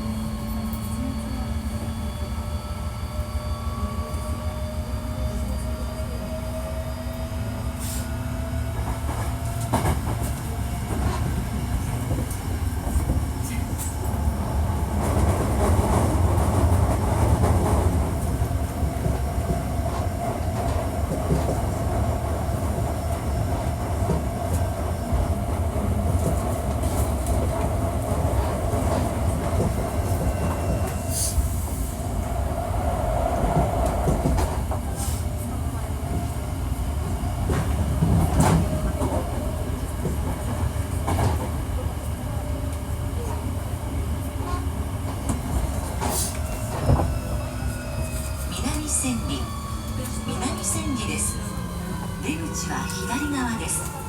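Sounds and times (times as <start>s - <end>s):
wheels rumbling on rail: 0.0s - 54.0s
train motor whine: 45.3s - 54.0s.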